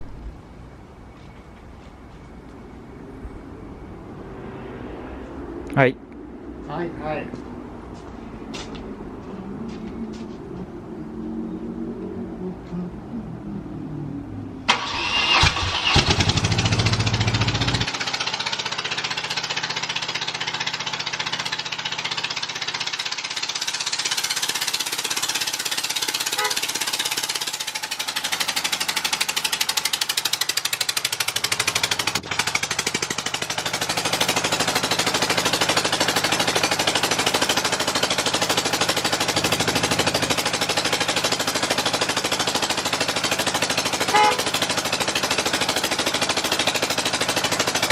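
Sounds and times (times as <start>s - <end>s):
electric starter cranking: 14.7s - 47.9s
motorcycle engine idling choppily: 16.2s - 47.9s.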